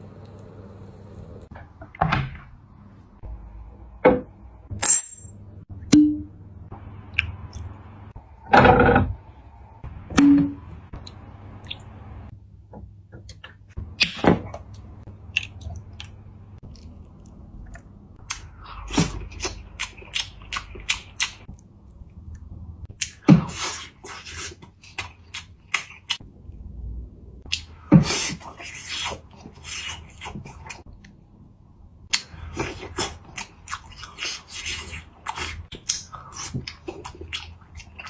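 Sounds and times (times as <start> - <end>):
tableware clicks and knocks: 4.8 - 5.4
chewing: 15.3 - 22.4, 32.1 - 38.0.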